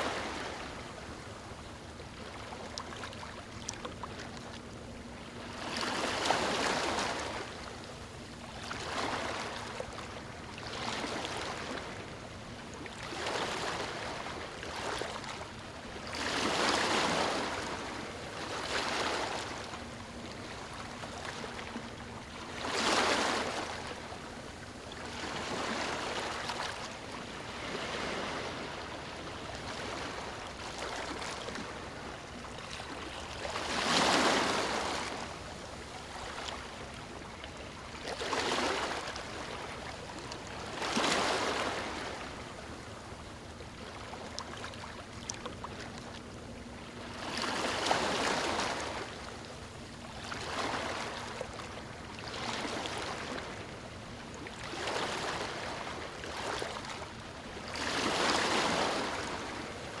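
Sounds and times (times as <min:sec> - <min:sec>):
ocean waves breaking on beach: 0:33.0 - 0:35.4, 0:54.6 - 1:00.0.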